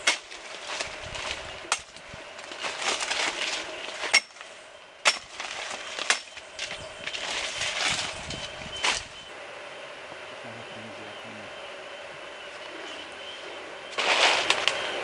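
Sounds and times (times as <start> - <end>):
branches snapping: 0.0 - 9.1, 13.9 - 14.8
rustling leaves: 0.0 - 15.0.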